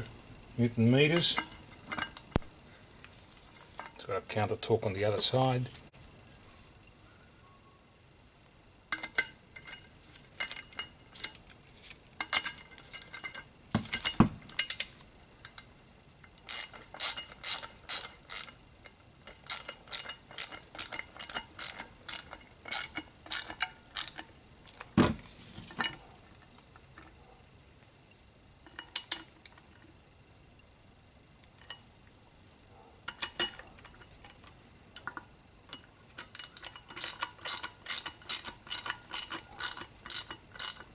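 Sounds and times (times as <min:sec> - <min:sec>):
ratcheting torque wrench clicking: 0:16.4 - 0:18.6, 0:19.3 - 0:24.2, 0:36.2 - 0:40.9.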